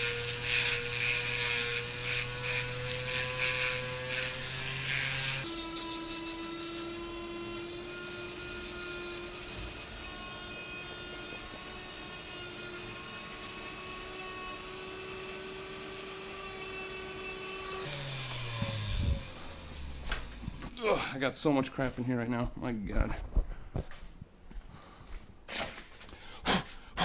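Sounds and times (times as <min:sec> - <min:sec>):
rotary tool grinding metal: 0:00.0 - 0:18.8.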